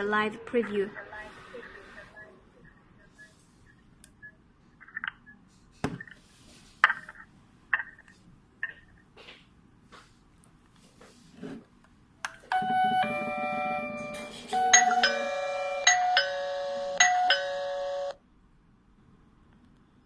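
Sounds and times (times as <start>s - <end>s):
doorbell chime melody: 12.5s - 18.2s.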